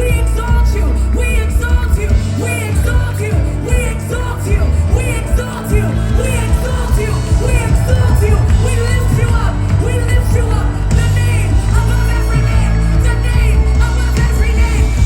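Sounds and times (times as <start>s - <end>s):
woman singing: 0.0s - 15.0s
worship band playing chords: 0.0s - 15.0s.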